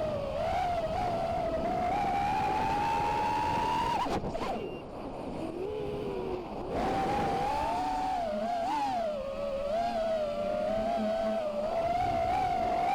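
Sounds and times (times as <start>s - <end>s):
quadcopter motors whining: 6.7s - 12.9s.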